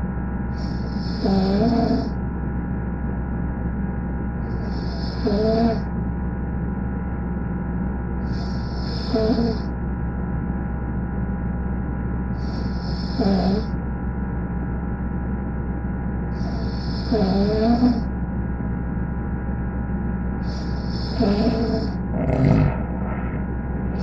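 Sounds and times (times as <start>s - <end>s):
steady electrical hum: 0.0s - 24.0s
person snoring: 0.6s - 2.1s, 4.5s - 5.8s, 8.2s - 9.6s, 12.4s - 13.7s, 16.4s - 18.0s, 20.4s - 24.0s.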